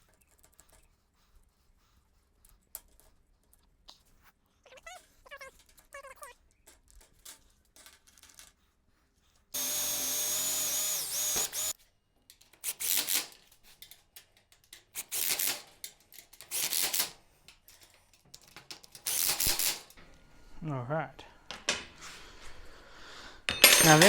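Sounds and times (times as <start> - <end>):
power drill drilling metal: 9.6 - 11.8, 12.6 - 13.3, 15.0 - 15.6, 16.5 - 17.1, 19.0 - 20.0, 23.5 - 24.0.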